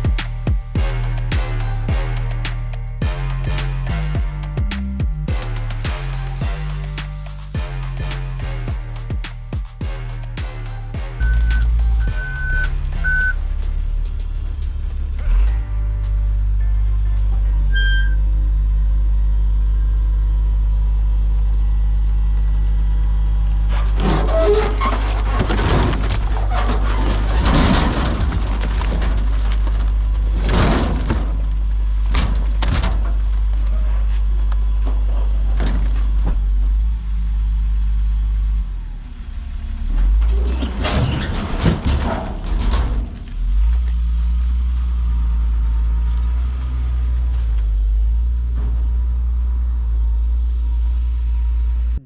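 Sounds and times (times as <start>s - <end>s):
heavy vehicle engine droning: 0.0s - 23.8s.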